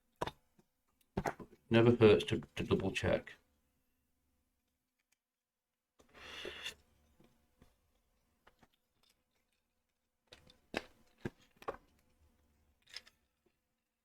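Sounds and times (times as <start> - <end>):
plastic parts rustling: 12.8 - 13.5.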